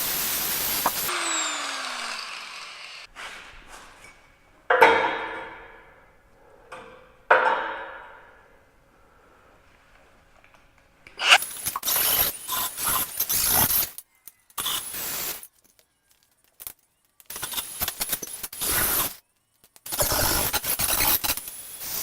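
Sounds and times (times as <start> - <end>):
welder crackling: 0.0 - 3.1, 17.1 - 22.0.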